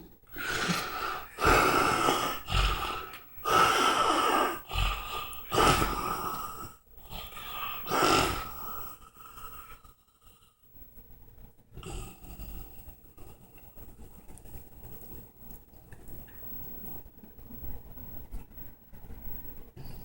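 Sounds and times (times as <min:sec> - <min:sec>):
man snoring loudly: 0:00.4 - 0:09.4.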